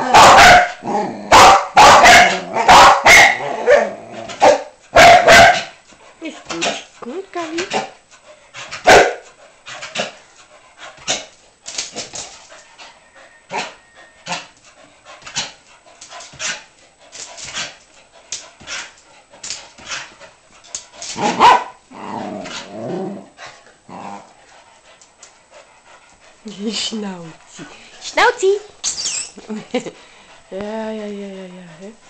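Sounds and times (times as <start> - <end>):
dog barking and yipping: 0.0 - 5.8, 8.7 - 9.3, 12.6 - 14.6, 21.1 - 21.9.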